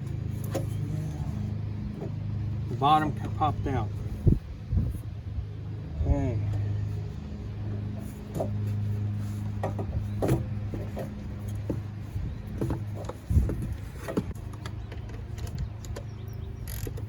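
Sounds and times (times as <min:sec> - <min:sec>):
steady low hum: 0:00.0 - 0:17.0
tools and engine parts clicking: 0:09.5 - 0:17.0.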